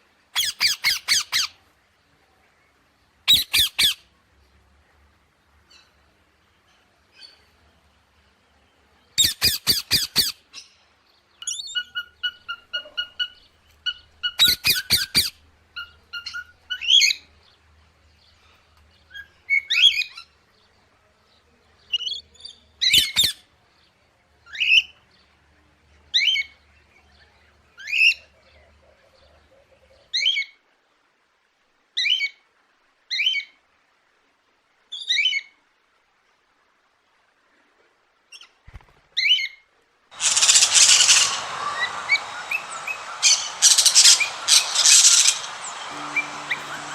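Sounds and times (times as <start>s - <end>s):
parrot short rising calls: 40.2s - 46.9s
parrot squawking: 40.2s - 46.9s
parrot whistled notes: 40.2s - 46.9s.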